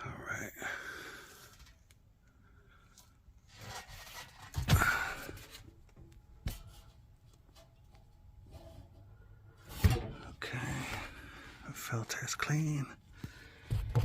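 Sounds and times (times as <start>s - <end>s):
scraping rustle: 3.4s - 4.7s.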